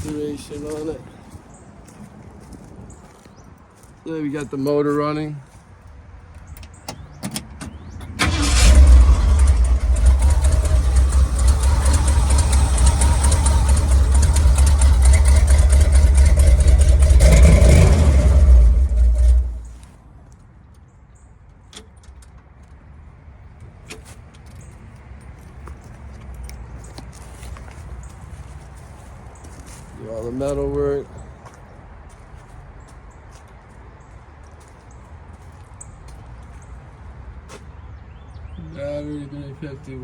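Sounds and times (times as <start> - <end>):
car engine running loudly: 8.3 - 19.7.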